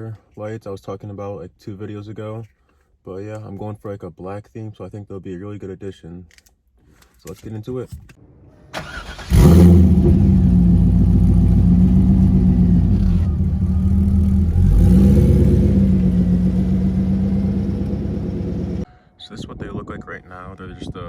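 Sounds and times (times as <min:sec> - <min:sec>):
car engine starting: 0:08.0 - 0:18.9
car engine running: 0:09.2 - 0:18.8.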